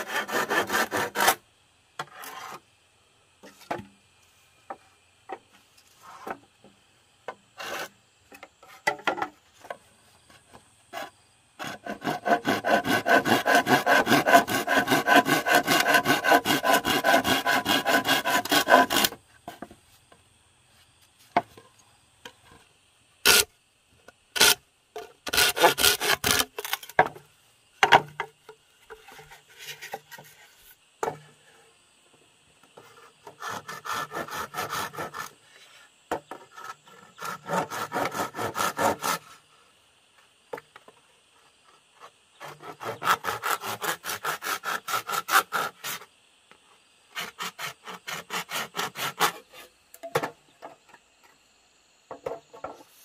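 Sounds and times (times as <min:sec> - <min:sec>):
hand tool rubbing on wood: 0:00.0 - 0:01.4, 0:10.9 - 0:19.2.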